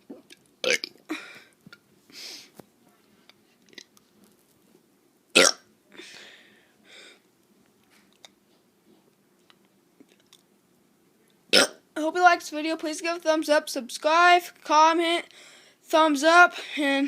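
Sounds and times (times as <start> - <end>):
child burping: 0.0 - 1.4, 5.4 - 5.6.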